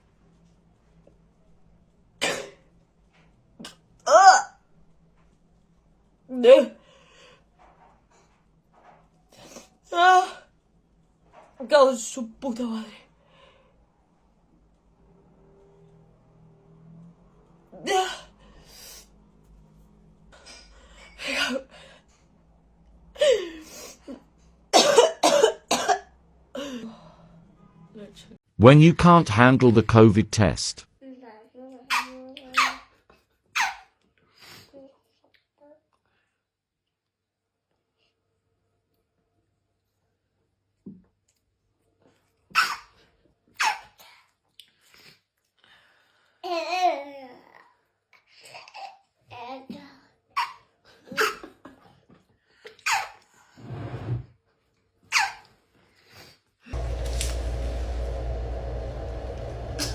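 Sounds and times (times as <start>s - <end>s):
person coughing: 2.2s - 2.6s, 24.8s - 26.0s.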